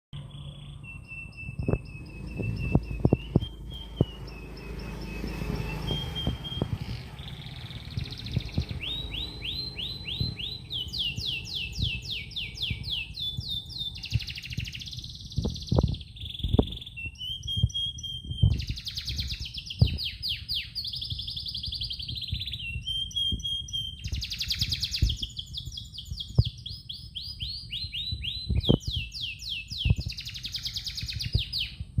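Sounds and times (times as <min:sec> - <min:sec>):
canary singing: 0:00.1 - 0:32.0
soft low knocks: 0:01.4 - 0:12.0.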